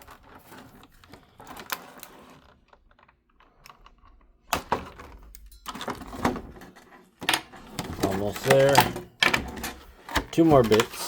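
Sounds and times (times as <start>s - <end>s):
packaging clicks and crinkles: 0.0s - 11.0s
packaging rustle: 7.7s - 11.0s.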